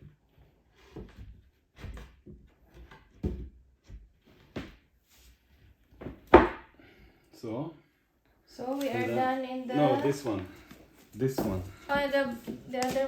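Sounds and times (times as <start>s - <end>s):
furniture panels knocking: 5.9s - 6.7s.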